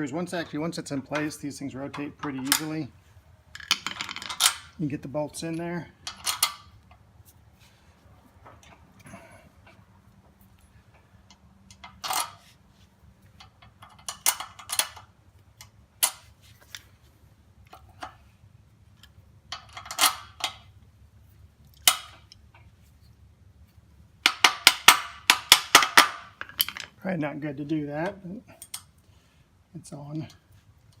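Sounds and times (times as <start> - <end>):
steel tools clinking: 26.4 - 27.0.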